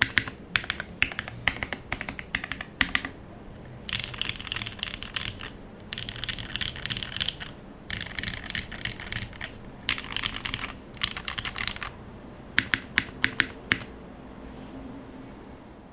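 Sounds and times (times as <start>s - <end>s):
mechanical keyboard typing: 0.0s - 3.2s, 3.8s - 12.0s, 12.6s - 13.9s.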